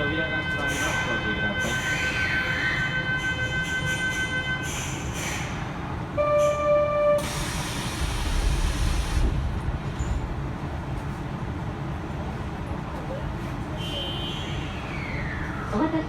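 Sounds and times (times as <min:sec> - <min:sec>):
train rumble: 0:00.0 - 0:16.0
air brake hiss: 0:04.6 - 0:05.7, 0:07.2 - 0:09.4.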